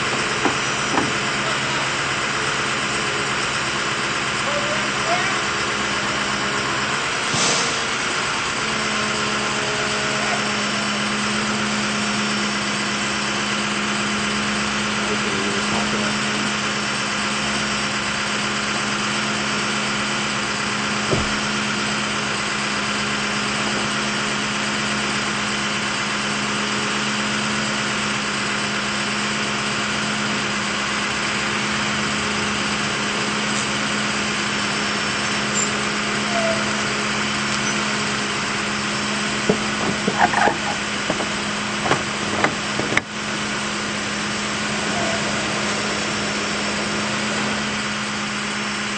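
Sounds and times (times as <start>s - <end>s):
engine humming steadily: 0.0s - 48.9s
sharp knocks: 39.4s - 43.1s.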